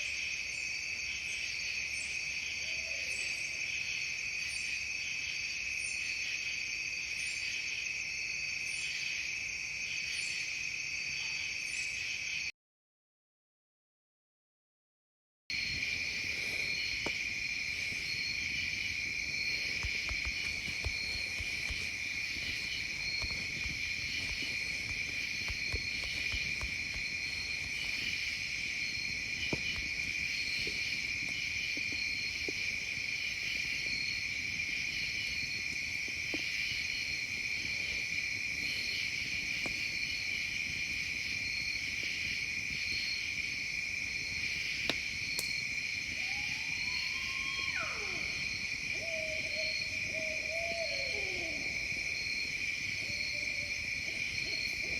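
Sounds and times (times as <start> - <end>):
crickets trilling: 0.0 - 12.5, 15.5 - 54.9.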